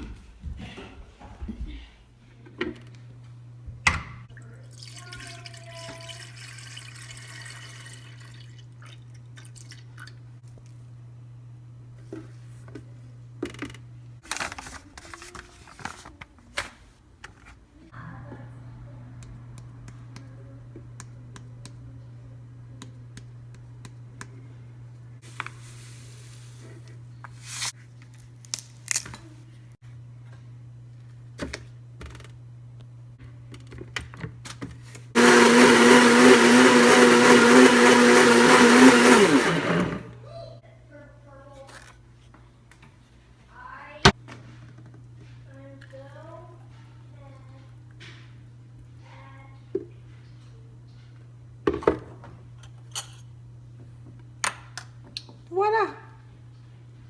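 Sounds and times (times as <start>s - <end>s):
blender running: 35.2s - 40.2s.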